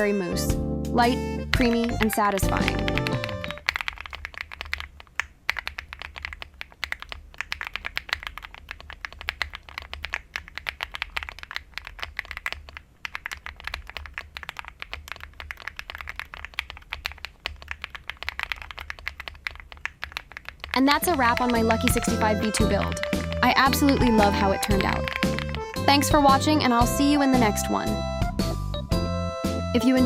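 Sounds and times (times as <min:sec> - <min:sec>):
mechanical keyboard typing: 0:01.5 - 0:27.1.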